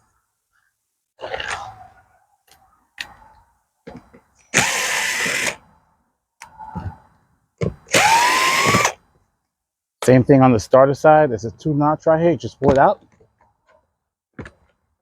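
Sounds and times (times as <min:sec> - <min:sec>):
power drill driving screws: 0:04.5 - 0:05.6, 0:07.9 - 0:09.0.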